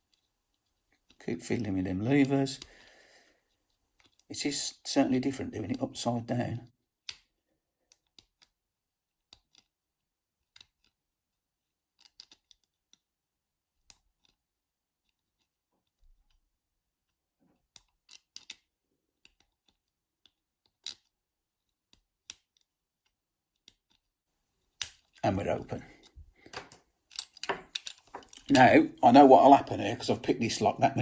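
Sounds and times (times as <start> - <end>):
lock pick metallic clicks: 17.7 - 18.6, 24.8 - 25.2, 26.0 - 28.7.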